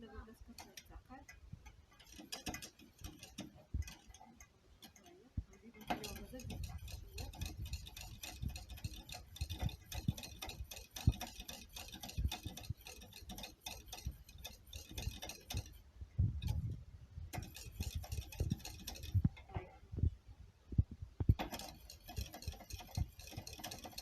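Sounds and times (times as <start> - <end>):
utensil scraping against a pot: 1.9 - 4.2, 4.8 - 15.8, 17.4 - 19.3, 21.4 - 24.0.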